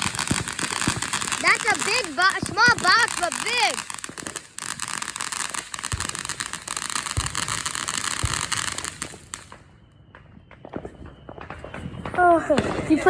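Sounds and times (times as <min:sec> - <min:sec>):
firework fountain hissing and crackling: 0:00.0 - 0:09.6.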